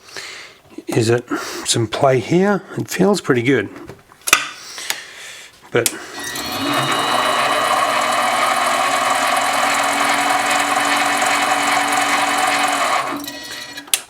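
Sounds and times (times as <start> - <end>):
lathe motor whining: 6.1 - 14.0.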